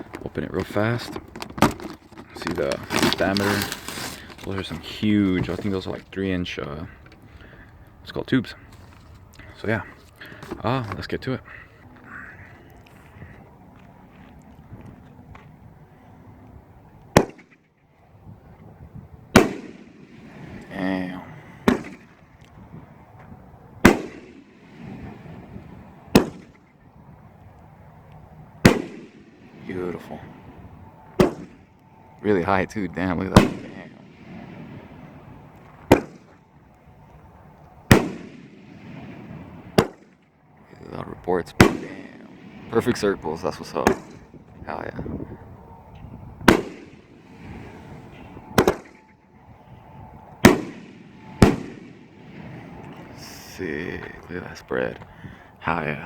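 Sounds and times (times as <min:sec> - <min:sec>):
firework booms echoing: 0:19.3 - 0:20.8, 0:21.6 - 0:22.2, 0:23.8 - 0:26.6, 0:28.6 - 0:30.0, 0:31.2 - 0:31.6, 0:33.3 - 0:35.1, 0:35.8 - 0:36.4, 0:37.9 - 0:40.1, 0:41.6 - 0:42.9, 0:43.8 - 0:44.5, 0:46.4 - 0:48.0, 0:48.6 - 0:49.0, 0:50.4 - 0:53.0.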